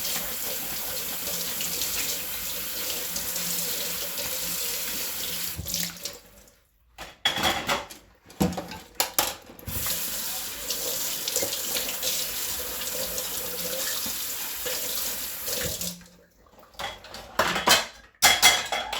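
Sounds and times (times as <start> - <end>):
tap running into sink: 4.0 - 6.0, 9.6 - 10.3
dishes clattering: 7.0 - 9.4, 16.8 - 18.9.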